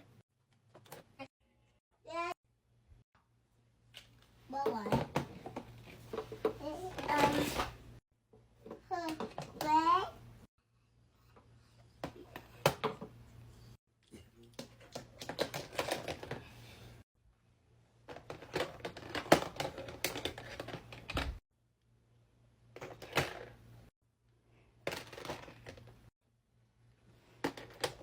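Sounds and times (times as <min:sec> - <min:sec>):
plastic toys clicking and clattering: 0:14.6 - 0:16.5, 0:18.1 - 0:21.4, 0:24.8 - 0:26.0, 0:27.4 - 0:28.0.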